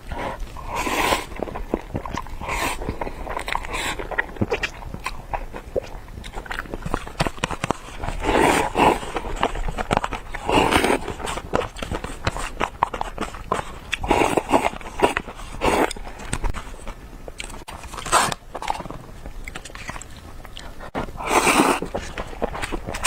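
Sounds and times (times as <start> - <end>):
slurping noodles: 0.0 - 16.8, 19.7 - 23.0
wet chewing with smacking: 0.0 - 23.0.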